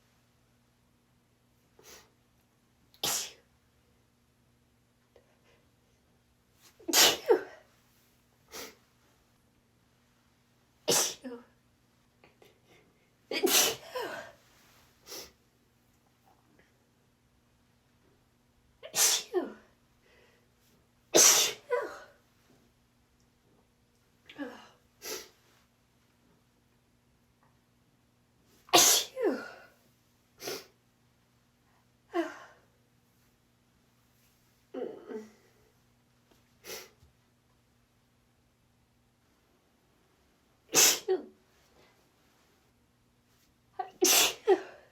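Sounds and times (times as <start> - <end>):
woman sneezing: 3.0 - 3.4, 6.9 - 7.7, 10.9 - 11.5, 13.3 - 14.4, 18.9 - 19.7, 21.2 - 22.2, 28.7 - 29.8, 40.7 - 41.4, 43.8 - 44.9.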